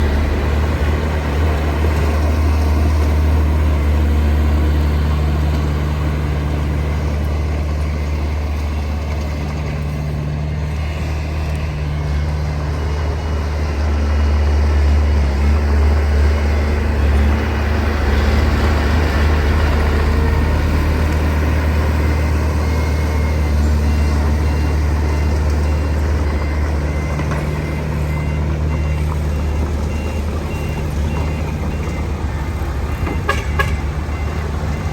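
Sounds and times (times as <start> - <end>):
heavy diesel machinery running: 0.0 - 34.9
reversing beeper beeping: 15.8 - 34.9.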